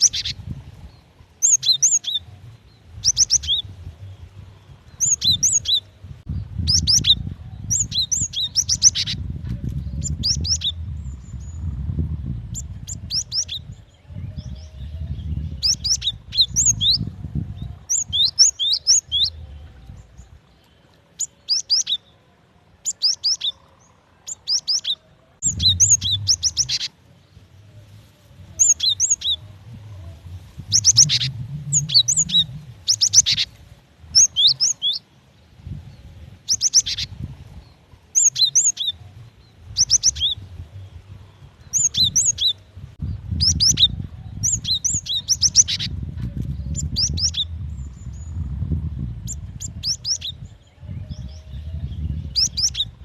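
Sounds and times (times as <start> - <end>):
bird chirping: 0.0 - 53.0
low rumble: 2.2 - 20.6, 25.2 - 34.6, 39.0 - 53.0.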